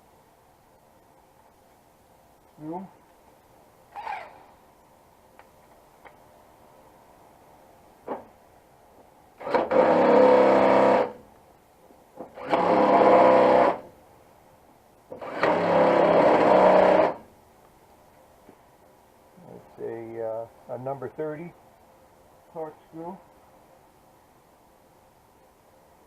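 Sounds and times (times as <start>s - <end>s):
power driver whirring: 4.0s - 4.5s, 15.2s - 17.2s.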